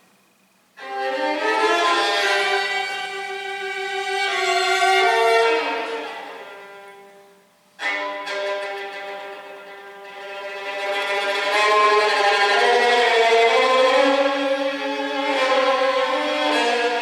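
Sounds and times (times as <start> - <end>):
violin playing long held notes: 0.8 - 7.0, 10.2 - 17.0.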